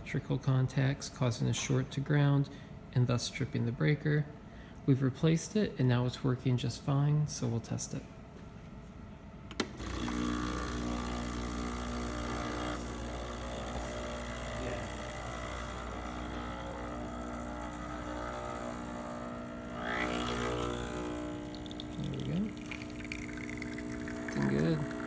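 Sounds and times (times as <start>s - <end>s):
espresso machine pump humming: 9.6s - 25.0s.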